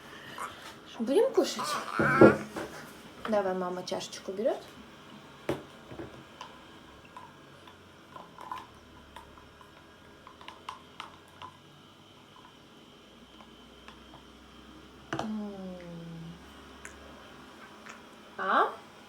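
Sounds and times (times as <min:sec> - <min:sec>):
baby wet smacking sounds: 0:16.8 - 0:18.1.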